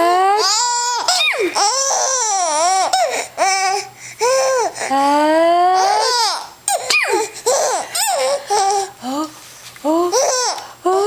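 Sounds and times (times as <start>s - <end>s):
baby laughing: 0.4s - 4.6s, 5.8s - 8.9s.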